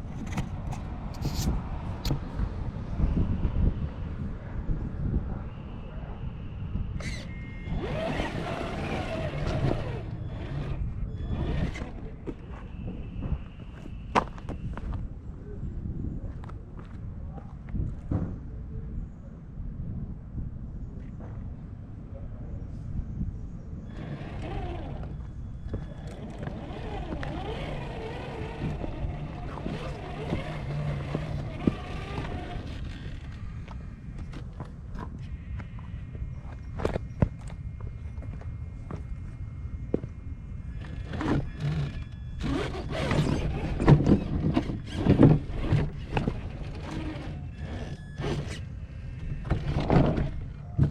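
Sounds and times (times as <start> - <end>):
wind rumble on microphone: 0.0 - 50.9
electric motor whining: 7.0 - 12.4, 23.9 - 33.8, 40.7 - 50.9.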